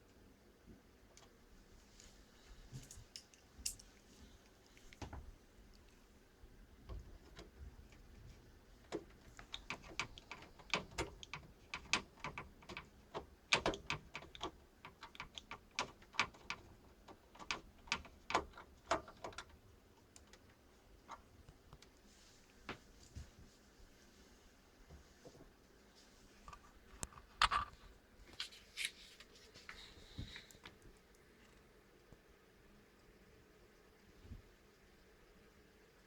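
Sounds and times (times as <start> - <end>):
sharp clicks and light taps: 8.8 - 21.9.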